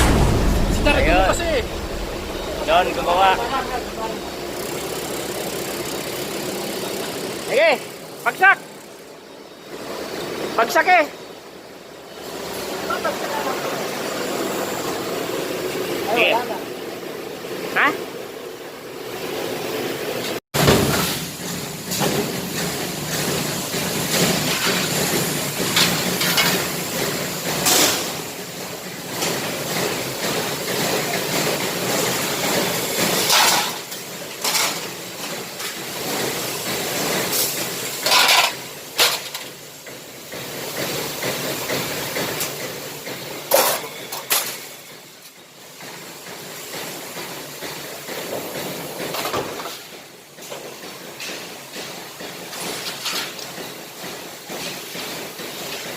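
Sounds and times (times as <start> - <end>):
hissing and clanking bursts: 0.0 - 9.0, 20.6 - 55.9.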